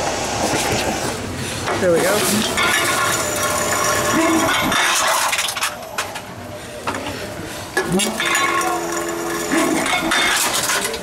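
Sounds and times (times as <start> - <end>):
machine mechanism humming: 0.0 - 11.0
containers clinking in machine: 2.2 - 6.2, 7.8 - 11.0.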